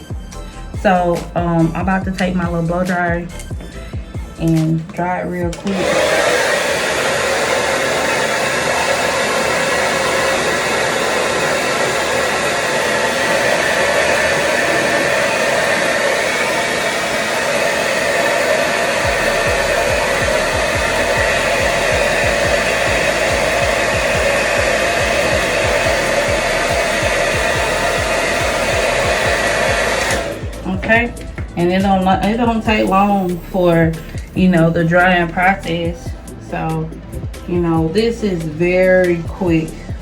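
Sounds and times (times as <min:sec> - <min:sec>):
blow dryer running: 0:00.0 - 0:40.0
low rumble: 0:19.0 - 0:38.0.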